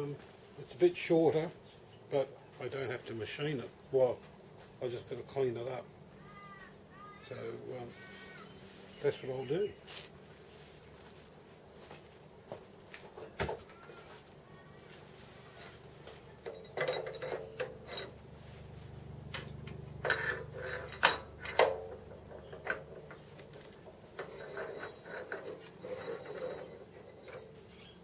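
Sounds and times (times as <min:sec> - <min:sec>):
faint steady hum: 0:00.0 - 0:28.0
metal tools clinking and ratcheting: 0:15.7 - 0:18.2, 0:20.0 - 0:27.8.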